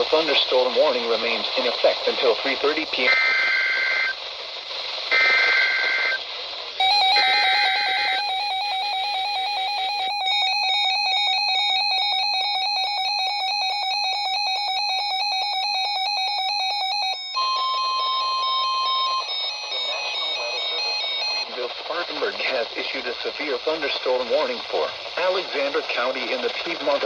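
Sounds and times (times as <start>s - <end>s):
static hiss: 0.0s - 27.0s
warbling data bursts: 1.2s - 23.2s
second radio alarm: 3.0s - 4.2s, 5.1s - 6.2s, 6.8s - 21.6s
radio alarm beeping rapidly: 3.1s - 4.2s, 5.1s - 6.2s, 6.8s - 21.5s.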